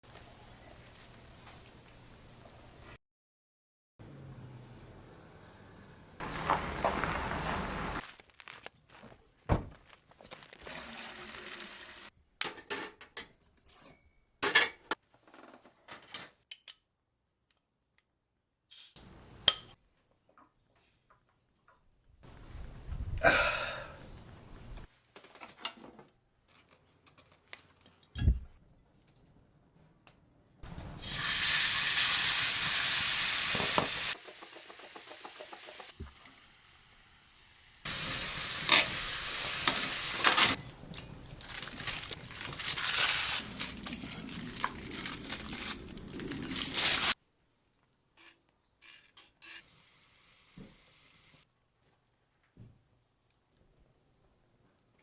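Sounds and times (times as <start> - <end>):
food sizzling in a pan: 10.7 - 12.1, 31.0 - 40.6, 49.6 - 51.4
utensils and cookware clattering: 12.4 - 15.0, 38.4 - 41.2.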